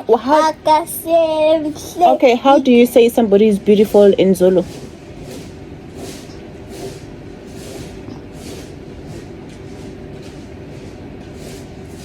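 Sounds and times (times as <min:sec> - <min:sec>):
soft swishes: 0:03.9 - 0:12.0.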